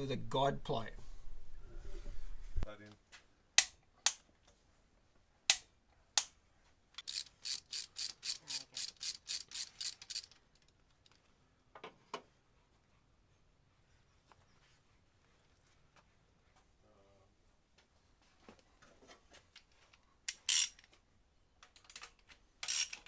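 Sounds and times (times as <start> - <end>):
ratchet wrench clicking: 7.0 - 10.4, 22.6 - 23.0.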